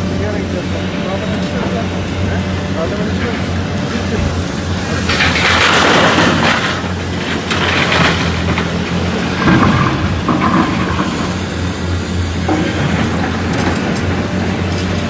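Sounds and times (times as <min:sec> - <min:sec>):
heavy diesel engine drone: 0:00.0 - 0:15.0
machine whine: 0:00.0 - 0:15.0
earth and rock pouring: 0:04.2 - 0:14.7.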